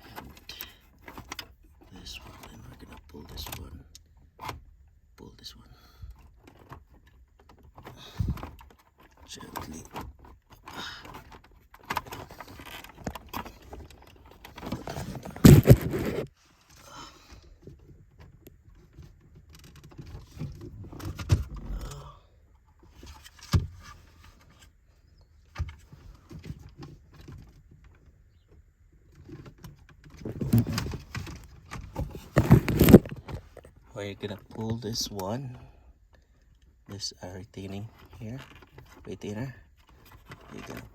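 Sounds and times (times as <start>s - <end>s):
plastic trim being pried loose: 14.6s - 16.3s, 31.9s - 33.6s.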